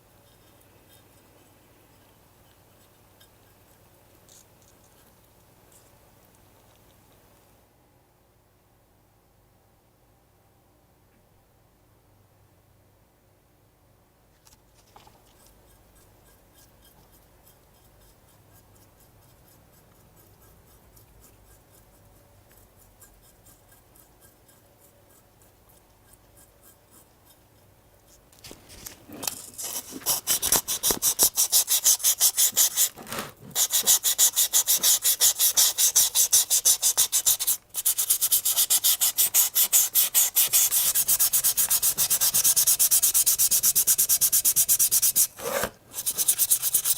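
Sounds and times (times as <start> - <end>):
hand sanding strokes: 29.5 - 46.9.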